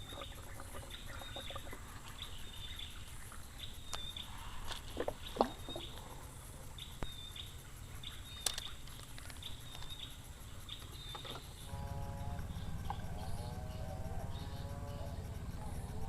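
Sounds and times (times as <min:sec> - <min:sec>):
bird chirping: 0:00.0 - 0:16.0
sharp clicks: 0:08.3 - 0:11.5
low rumble: 0:11.6 - 0:16.0.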